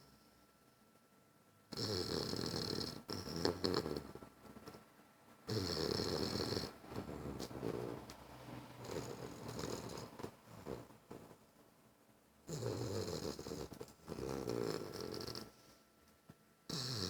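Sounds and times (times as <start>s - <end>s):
dog snoring: 1.7s - 4.8s, 5.5s - 8.2s, 8.8s - 11.4s, 12.5s - 15.7s, 16.7s - 17.0s.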